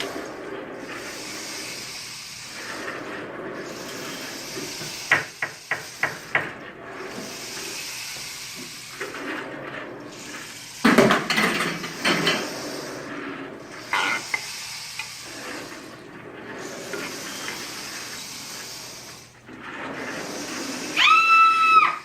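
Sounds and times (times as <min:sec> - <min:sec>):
steady hiss: 0:00.0 - 0:03.0.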